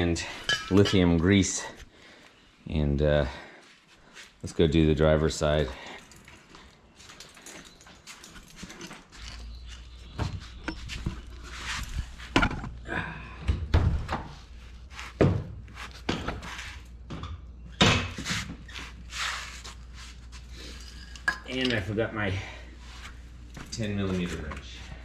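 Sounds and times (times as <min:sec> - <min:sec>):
hand tools clinking and knocking: 0:00.2 - 0:01.8, 0:05.2 - 0:12.8, 0:20.5 - 0:22.1, 0:23.5 - 0:24.8
footsteps: 0:03.3 - 0:12.8, 0:13.8 - 0:17.0, 0:22.8 - 0:25.0.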